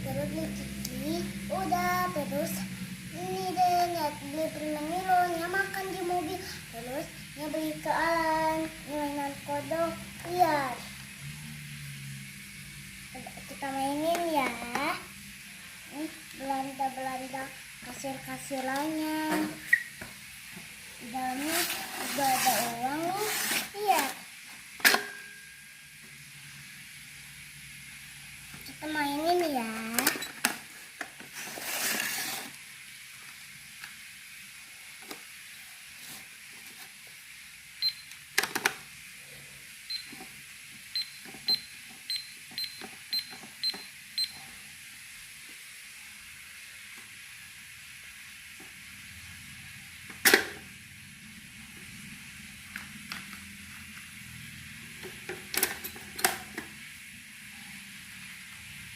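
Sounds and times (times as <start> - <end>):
plastic toy clicks and knocks: 38.4 - 38.8, 55.1 - 56.7
short high electronic beeps: 39.9 - 40.1, 41.0 - 44.4
sharp plastic clack: 50.2 - 50.6.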